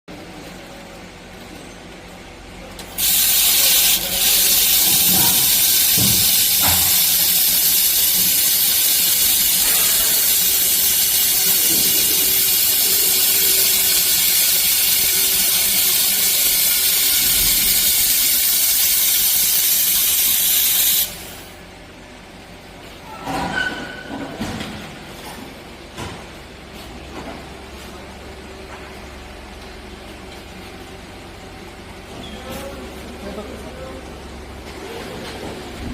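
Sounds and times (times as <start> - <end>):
welding gas hissing: 2.9 - 21.6.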